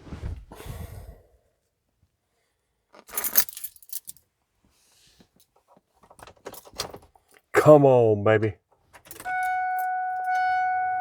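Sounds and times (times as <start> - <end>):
keys jangling: 3.1 - 4.2, 9.0 - 10.5.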